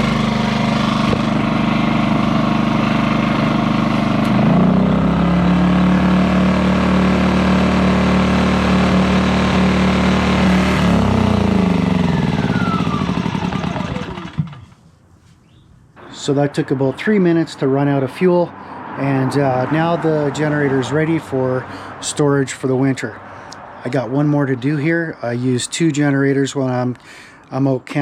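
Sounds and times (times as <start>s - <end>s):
generator engine running: 0.0s - 14.8s.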